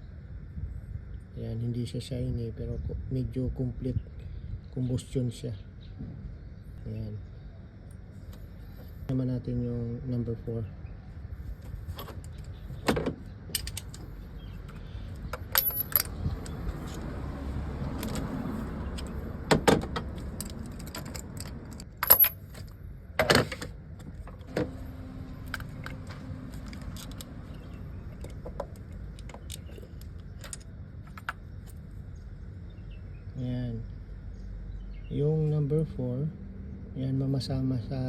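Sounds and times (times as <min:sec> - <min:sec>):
metal tools clinking and clanking: 0:13.6 - 0:14.1, 0:15.3 - 0:17.1, 0:20.1 - 0:22.7, 0:28.2 - 0:31.4.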